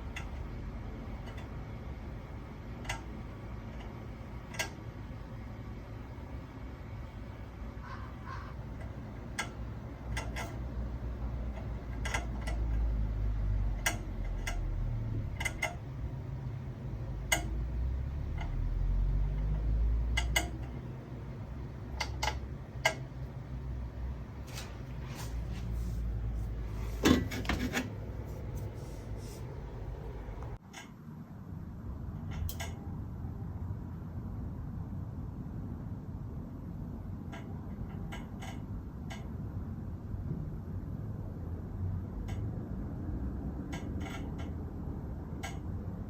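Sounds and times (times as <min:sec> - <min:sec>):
sharp clicks and light knocks: 0:08.8 - 0:12.9, 0:13.6 - 0:16.2, 0:17.2 - 0:17.7, 0:18.3 - 0:20.9, 0:21.9 - 0:23.4, 0:32.2 - 0:32.8.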